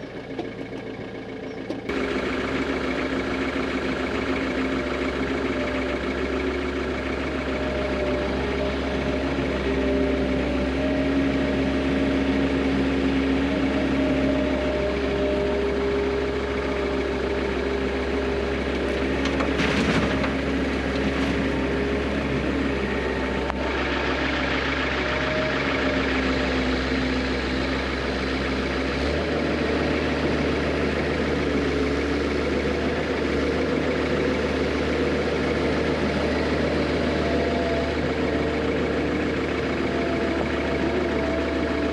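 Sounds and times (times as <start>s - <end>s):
vehicle engine running: 0.0s - 41.9s
clatter: 18.7s - 21.7s.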